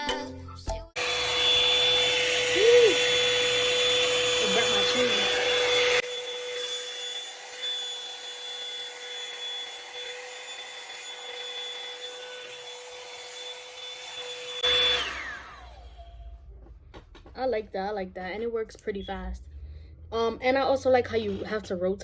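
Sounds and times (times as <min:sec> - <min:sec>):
hair dryer brush motor whine: 0:01.0 - 0:16.5
motor spinning down: 0:01.0 - 0:16.5.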